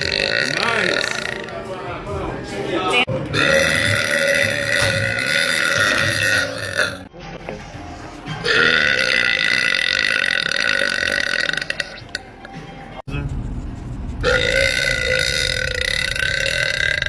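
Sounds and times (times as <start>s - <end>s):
woman belching loudly: 0.0s - 1.6s, 3.3s - 7.1s, 8.4s - 12.2s, 14.3s - 17.0s.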